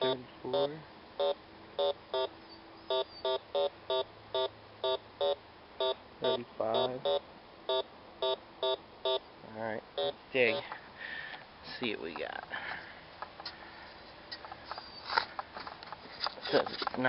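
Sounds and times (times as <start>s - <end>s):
metal detector short beeps: 1.2s - 9.2s, 10.0s - 10.7s.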